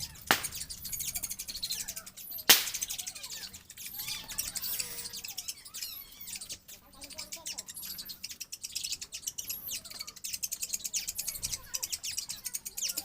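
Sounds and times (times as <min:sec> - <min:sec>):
birds chirping: 0:00.0 - 0:13.0
sharp loud click: 0:00.3 - 0:00.6, 0:02.5 - 0:02.9.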